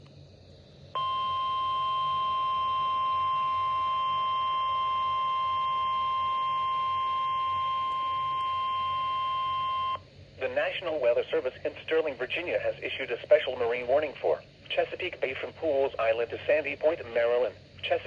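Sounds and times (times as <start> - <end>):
steady alarm tone: 1.0 - 10.0.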